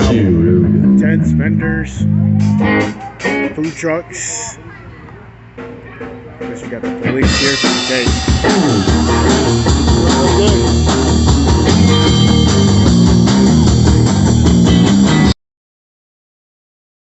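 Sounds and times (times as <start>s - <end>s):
electric guitar: 0.0s - 3.8s, 7.1s - 15.3s
live rock band playing: 0.0s - 3.9s, 5.4s - 15.4s.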